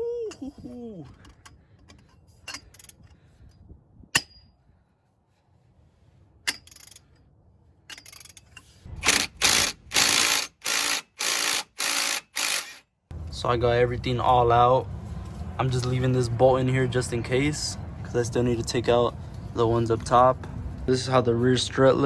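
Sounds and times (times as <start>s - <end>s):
ratchet wrench clicking: 9.0s - 12.8s.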